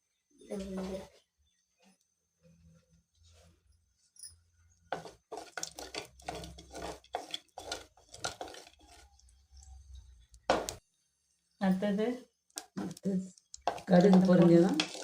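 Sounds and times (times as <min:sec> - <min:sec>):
seeds spluttering in hot oil: 0:05.0 - 0:10.8, 0:12.4 - 0:15.0.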